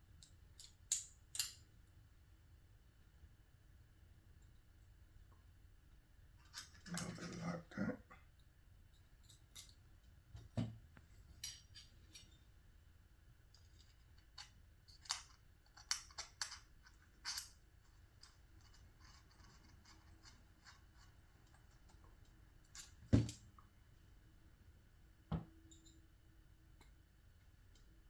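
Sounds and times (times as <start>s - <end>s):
small metal parts clicking: 0.2s - 1.6s, 13.5s - 17.6s.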